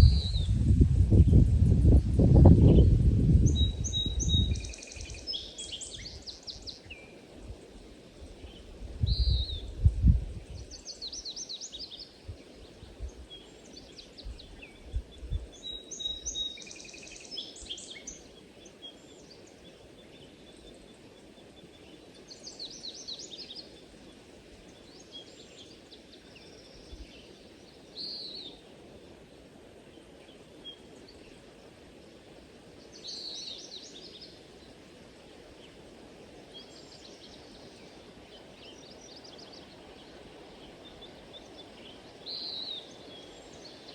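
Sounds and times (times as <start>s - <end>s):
low background rumble: 0.0s - 4.6s
songbirds singing: 0.0s - 43.9s.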